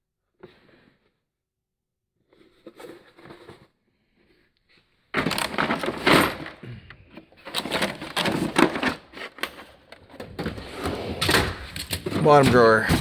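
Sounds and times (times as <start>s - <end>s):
drawer sliding with rattling scrape: 5.2s - 6.6s, 7.4s - 13.0s.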